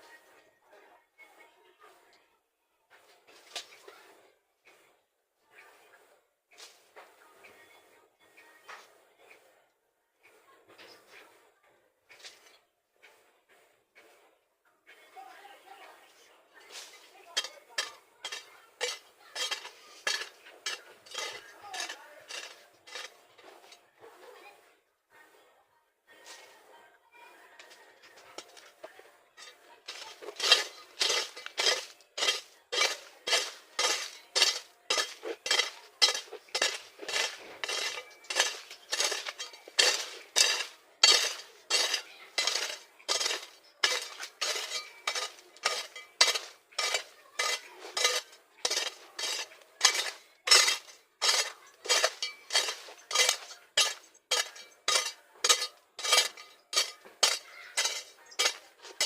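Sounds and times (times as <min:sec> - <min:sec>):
hand tool scraping soil: 0:16.6 - 0:23.8, 0:27.6 - 0:59.0.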